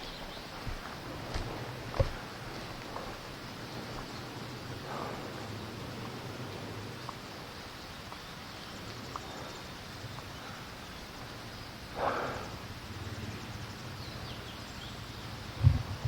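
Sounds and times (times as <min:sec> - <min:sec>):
low wind buffet: 0:00.0 - 0:14.5, 0:15.2 - 0:16.0
rustle: 0:00.0 - 0:16.0
wind noise on microphone: 0:15.4 - 0:16.0.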